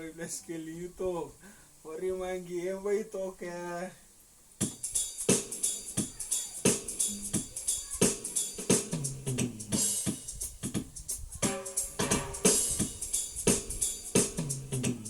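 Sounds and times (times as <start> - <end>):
drum beat: 4.6 - 15.0.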